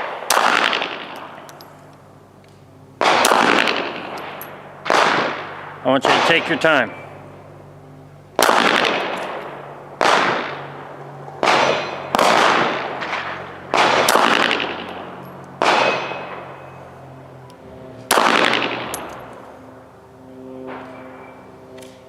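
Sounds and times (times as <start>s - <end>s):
handgun shots with echo: 0.0s - 1.4s, 3.0s - 6.6s, 8.4s - 10.6s, 11.4s - 15.0s, 15.6s - 16.5s, 18.1s - 19.2s.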